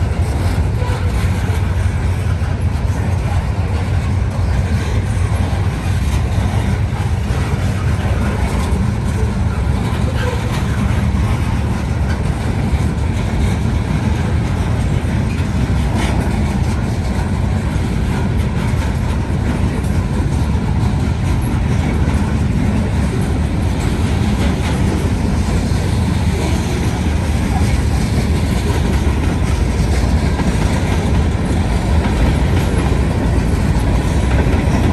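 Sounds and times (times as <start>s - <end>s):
freight train rumbling past: 0.0s - 34.9s.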